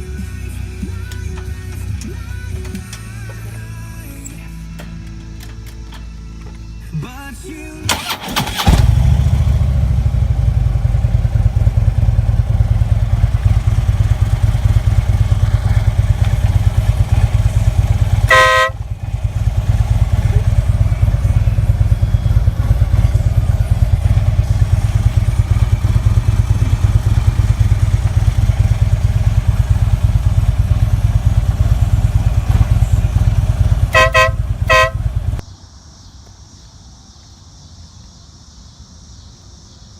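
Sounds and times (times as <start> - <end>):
motorcycle engine idling: 0.0 - 6.6, 7.9 - 35.5
air horn blasts: 18.0 - 20.2, 31.6 - 35.4.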